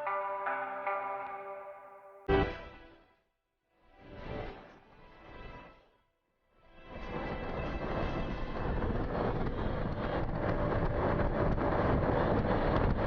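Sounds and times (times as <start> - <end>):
wind rush on microphone: 7.0 - 13.0.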